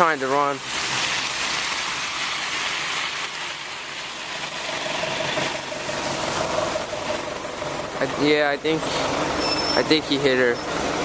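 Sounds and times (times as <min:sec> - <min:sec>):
truck engine running: 0:00.0 - 0:11.0
steady whine: 0:04.3 - 0:08.8.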